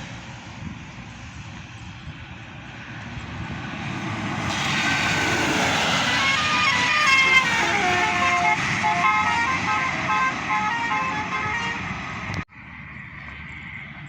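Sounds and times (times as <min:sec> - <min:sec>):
bus going by: 0:00.0 - 0:14.0
road traffic noise: 0:00.0 - 0:14.0
bus horn playing melody: 0:06.2 - 0:12.0.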